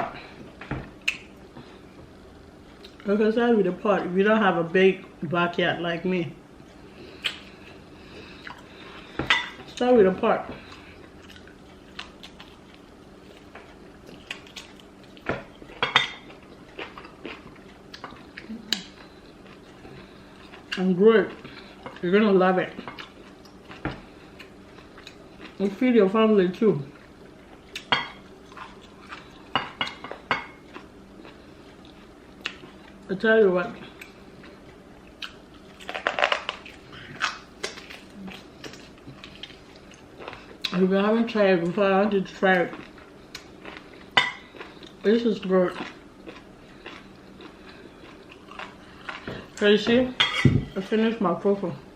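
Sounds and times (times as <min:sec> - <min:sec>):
mouth chewing and smacking: 0:16.2 - 0:20.8, 0:45.7 - 0:49.6.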